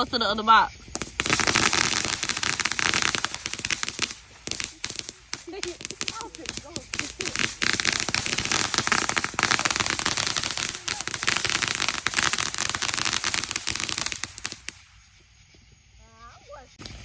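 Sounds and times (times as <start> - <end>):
fireworks crackling pops: 0.6 - 15.3, 16.7 - 17.0.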